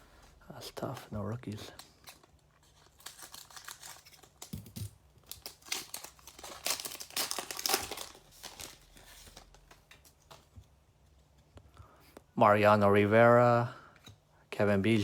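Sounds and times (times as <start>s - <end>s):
card pack wrapper tearing and crinkling: 0.8s - 10.4s.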